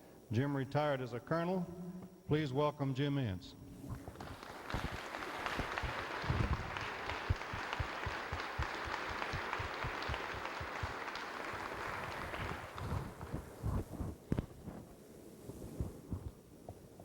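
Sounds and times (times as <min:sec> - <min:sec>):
audience applauding: 0:04.0 - 0:13.6.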